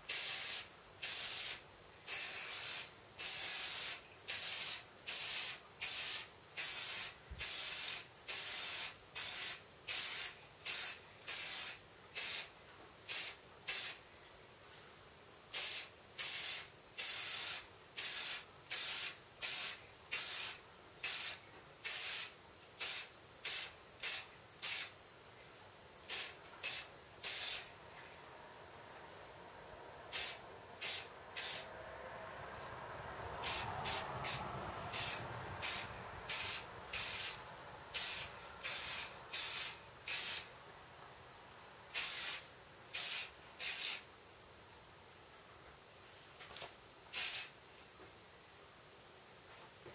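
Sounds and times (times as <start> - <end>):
aerosol spray can bursts: 0.1 - 12.5, 13.1 - 14.0, 15.5 - 25.0, 26.1 - 27.7, 30.1 - 31.7, 33.4 - 40.5, 41.9 - 44.1, 47.1 - 47.6.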